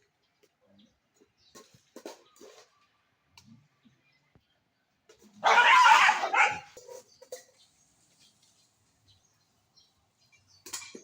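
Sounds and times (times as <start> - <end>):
loud harsh animal call: 5.4 - 6.7.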